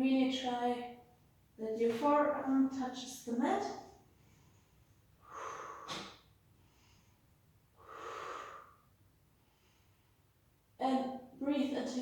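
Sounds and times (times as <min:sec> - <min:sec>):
woman breathing through nose: 0:05.2 - 0:07.2, 0:07.8 - 0:08.9.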